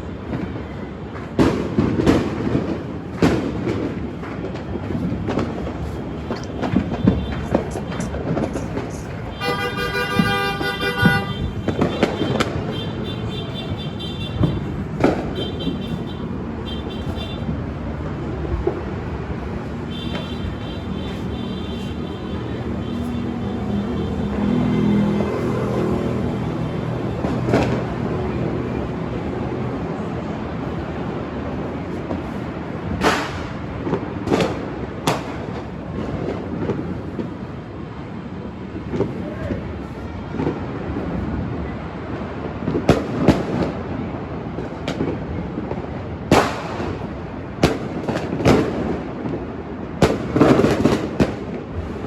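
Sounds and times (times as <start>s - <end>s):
fireworks bangs: 0.0s - 52.0s
faint firework pops: 0.3s - 9.2s, 11.0s - 13.0s, 14.2s - 16.2s, 27.2s - 27.9s, 32.9s - 37.4s, 40.3s - 40.7s, 42.5s - 43.8s, 44.6s - 51.7s
sharp bangs: 1.3s - 17.6s, 32.8s - 37.3s, 46.3s - 49.0s.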